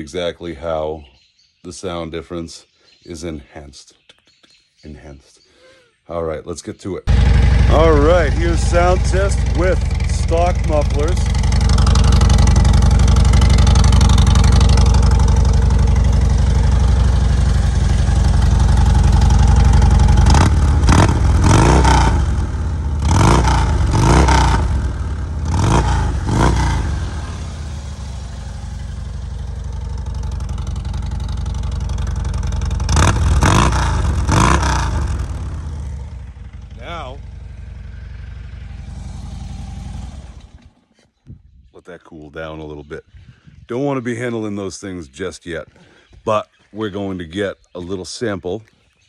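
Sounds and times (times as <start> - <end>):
motorcycle engine idling and revving: 7.0 - 41.6.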